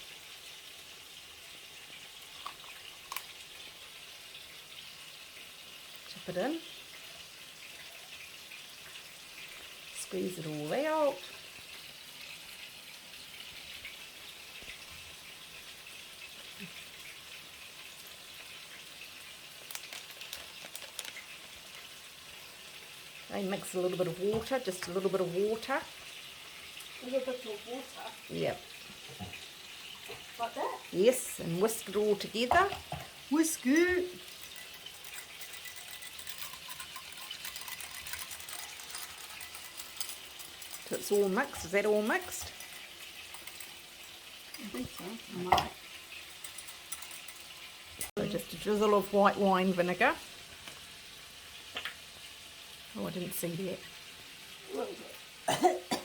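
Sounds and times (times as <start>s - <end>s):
food sizzling in a pan: 0.0s - 56.0s
whisk beating mixture in bowl: 31.6s - 45.0s, 45.6s - 48.2s
small sharp clicks and pops: 51.7s - 52.0s.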